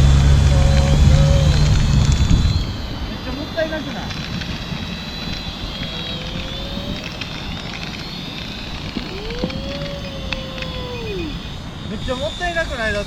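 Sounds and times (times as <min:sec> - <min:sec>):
drone propellers whining: 0:00.0 - 0:13.0
low wind-like rumble: 0:00.0 - 0:13.0
tone sliding up in pitch: 0:00.0 - 0:13.0.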